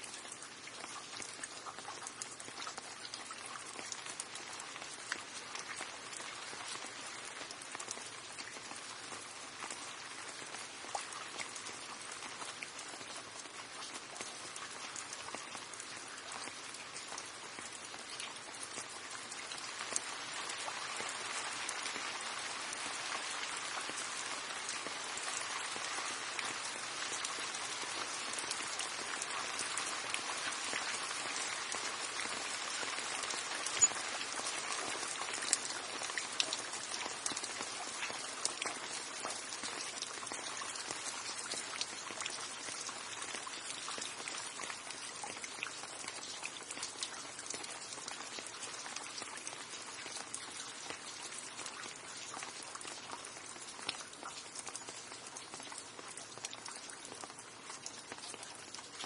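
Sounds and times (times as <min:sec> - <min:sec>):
steady rain hiss: 0:00.0 - 0:59.0
drips on hard surface: 0:22.7 - 0:59.0.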